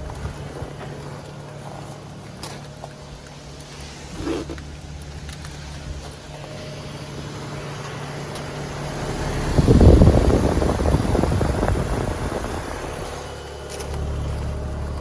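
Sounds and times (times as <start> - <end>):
heat pump humming: 0.0 - 15.0
loud rushing noise: 6.4 - 13.4.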